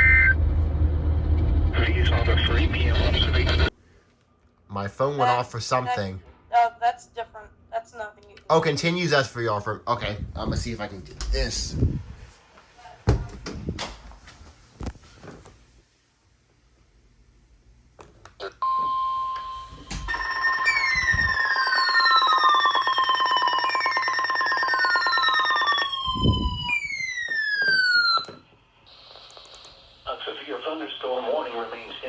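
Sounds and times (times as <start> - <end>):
high weather radio warning tone: 0.0 - 0.4, 1.6 - 3.7, 19.9 - 28.3, 28.9 - 32.0
pulsing beeps: 0.0 - 0.4, 19.4 - 28.3
falling siren-like sweep: 0.0 - 2.3, 20.0 - 28.4.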